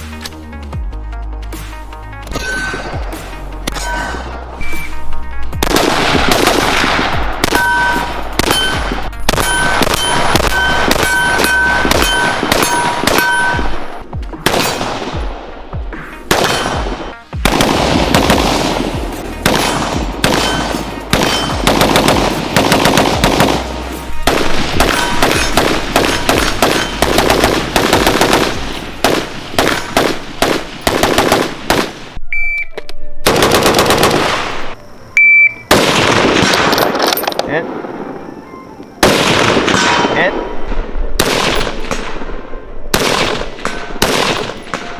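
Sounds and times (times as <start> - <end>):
rapid gunfire: 5.6 - 13.8, 14.4 - 15.5, 16.3 - 32.2, 33.3 - 34.7, 41.2 - 42.2, 43.0 - 44.6.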